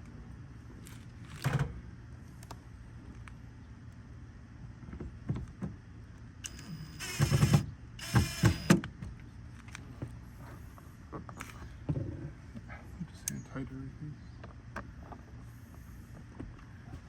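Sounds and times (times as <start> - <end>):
electric window motor whirring: 6.4 - 8.8.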